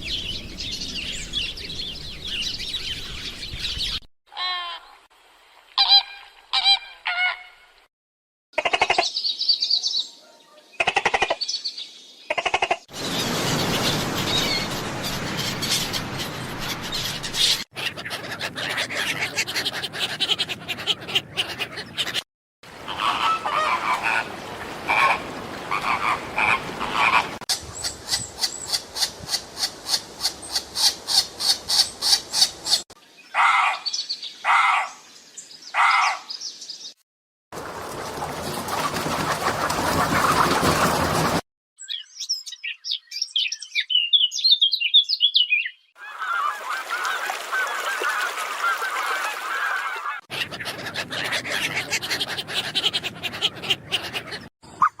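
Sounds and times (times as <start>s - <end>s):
bird calls: 8.6s - 22.2s, 22.8s - 37.0s, 41.8s - 55.0s.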